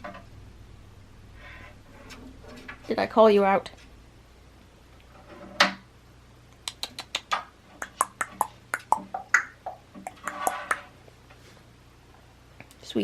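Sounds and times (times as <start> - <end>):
bird beak clicks: 6.6 - 9.5.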